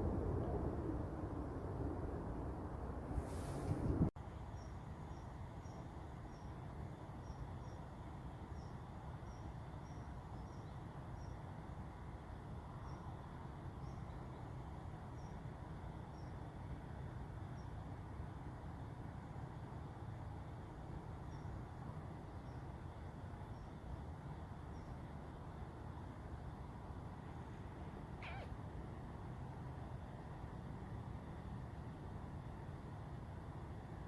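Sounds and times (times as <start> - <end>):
low outdoor hum: 0.0 - 34.0
small bird chirping: 28.2 - 28.6.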